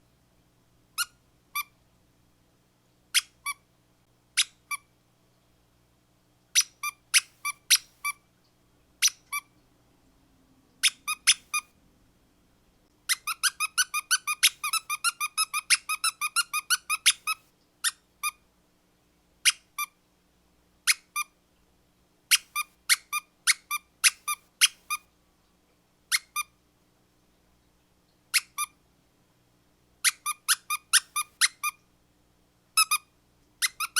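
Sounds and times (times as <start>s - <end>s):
squeaky dog toy squeaking: 1.0s - 1.7s, 3.2s - 3.6s, 4.4s - 4.9s, 6.6s - 8.2s, 9.0s - 9.5s, 10.8s - 11.7s, 13.1s - 18.4s, 19.4s - 19.9s, 20.9s - 21.3s, 22.3s - 25.1s, 26.1s - 26.5s, 28.3s - 28.8s, 30.0s - 31.8s, 32.8s - 33.9s.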